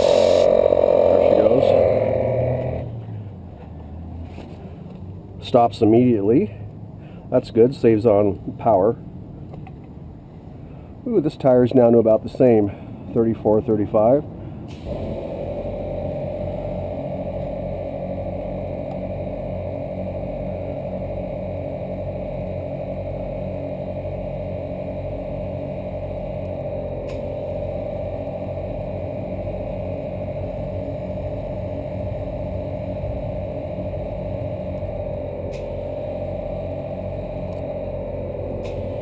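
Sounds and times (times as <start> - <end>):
air compressor running: 0.0 - 3.0, 14.7 - 39.0.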